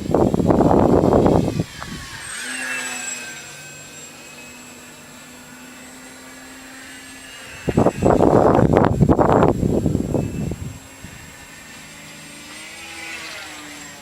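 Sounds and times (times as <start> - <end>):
model plane motor whining: 0.0 - 14.0.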